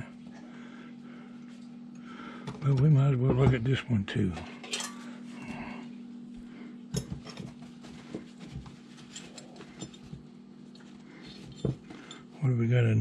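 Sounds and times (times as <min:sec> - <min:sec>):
steady low hum: 0:00.0 - 0:13.0
metal wrenches clinking: 0:04.6 - 0:05.0.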